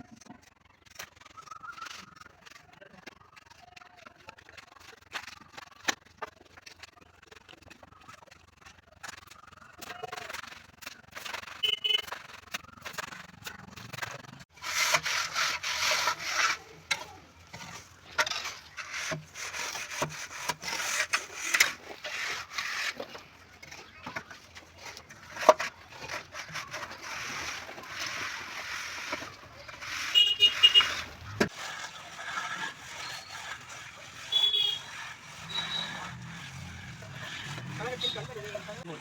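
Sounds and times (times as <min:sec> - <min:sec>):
hand tool scraping hard surface: 0:09.8 - 0:39.0.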